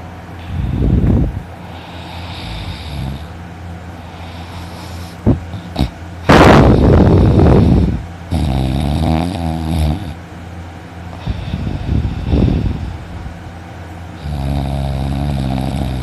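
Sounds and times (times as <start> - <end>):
low hum: 0.0 - 8.3, 10.2 - 14.2
man snoring loudly: 1.6 - 3.3, 4.0 - 10.2, 14.2 - 16.0.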